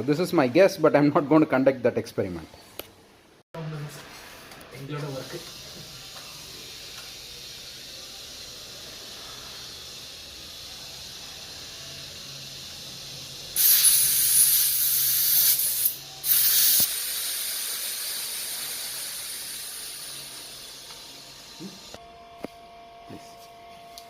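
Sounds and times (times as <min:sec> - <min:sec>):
air hissing from tire valve: 0:05.3 - 0:22.0
loud air blasts: 0:05.3 - 0:22.0.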